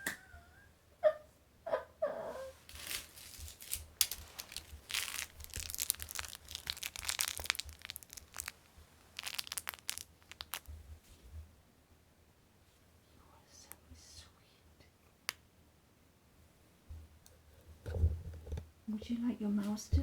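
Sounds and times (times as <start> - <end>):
packaging crinkling and crunching: 2.6 - 10.8.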